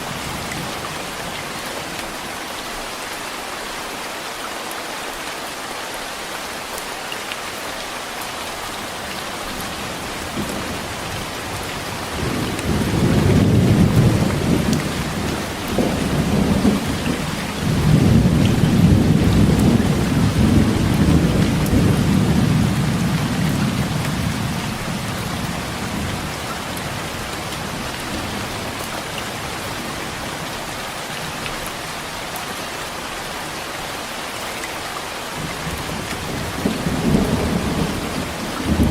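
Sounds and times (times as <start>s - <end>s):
heavy rain pouring: 0.0s - 38.9s
rolling thunder: 12.1s - 26.2s, 36.4s - 38.9s.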